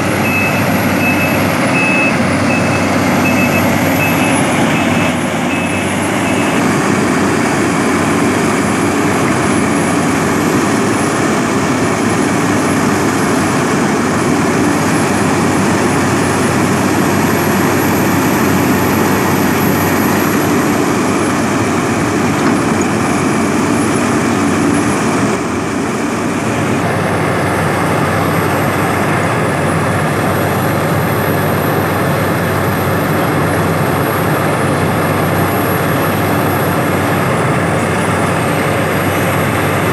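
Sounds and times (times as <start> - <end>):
reversing alarm beeping: 0.0 - 7.2
excavator diesel engine droning: 0.0 - 39.9.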